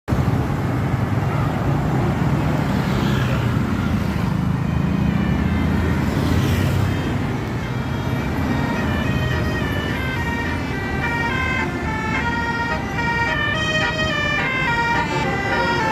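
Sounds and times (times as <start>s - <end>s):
road traffic: 0.1s - 15.9s
vehicles passing with hiss: 0.1s - 15.9s
bus diesel engine rumbling: 3.4s - 15.9s.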